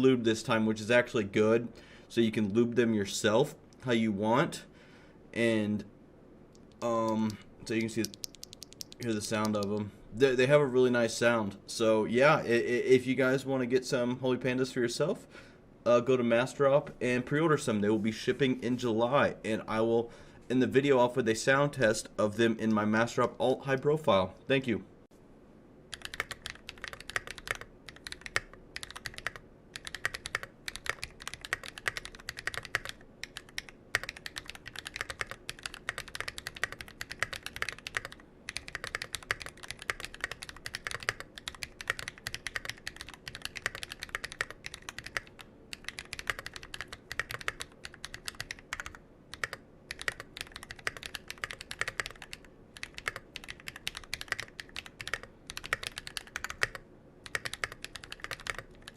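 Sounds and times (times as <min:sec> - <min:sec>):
fast typing on mechanical keyboard: 0:08.0 - 0:09.7, 0:25.9 - 0:58.9.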